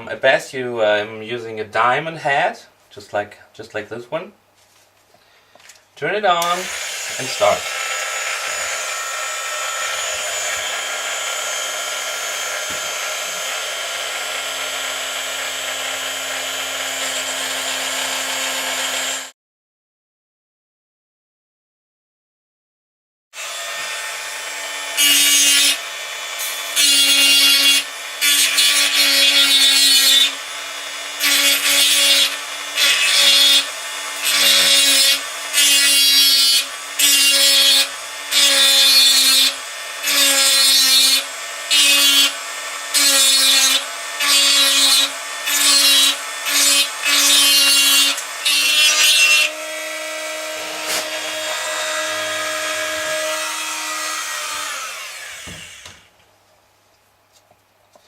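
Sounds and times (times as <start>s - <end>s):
rotary tool motor whine: 6.6s - 19.3s.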